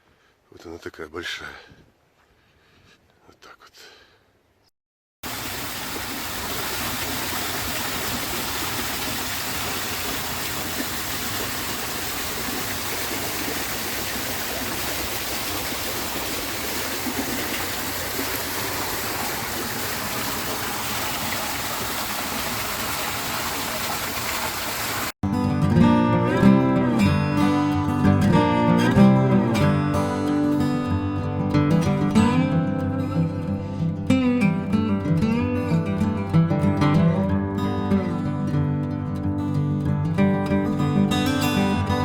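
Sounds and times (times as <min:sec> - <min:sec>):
waterfall splashing and rushing: 0:05.2 - 0:25.1.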